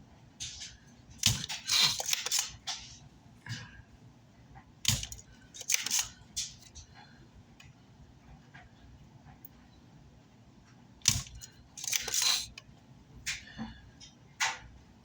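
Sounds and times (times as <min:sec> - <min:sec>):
hand tools clicking: 0:11.1 - 0:12.5.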